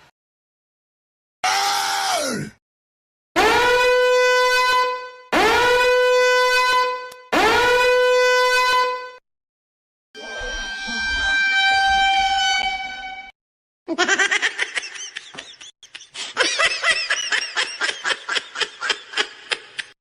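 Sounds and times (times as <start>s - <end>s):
horn-like blast: 3.4s - 9.2s, 10.2s - 13.3s
squeaky chattering pulses: 10.2s - 13.2s.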